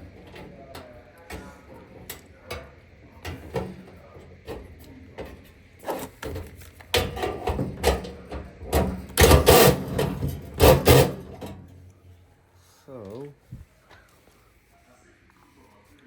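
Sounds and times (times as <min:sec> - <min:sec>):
metal clattering and scraping: 0:00.0 - 0:11.8
tools clicking and knocking on metal: 0:00.0 - 0:11.8.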